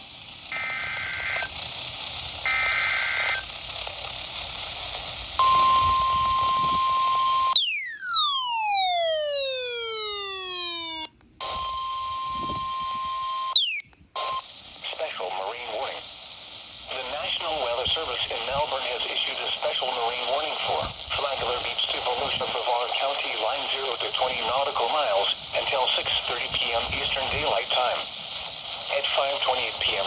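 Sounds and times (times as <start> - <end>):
radio hiss: 0.0 - 5.7, 8.5 - 11.6, 13.5 - 30.0
steady alarm tone: 5.4 - 13.8
falling electronic sweep: 7.6 - 11.1
screeching warbling data tones: 7.6 - 11.1, 13.6 - 13.8.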